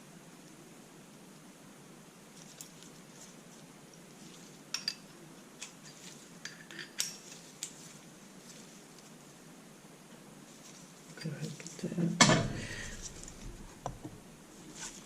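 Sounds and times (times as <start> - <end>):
metal hand tools clinking: 4.7 - 5.1, 5.8 - 7.7.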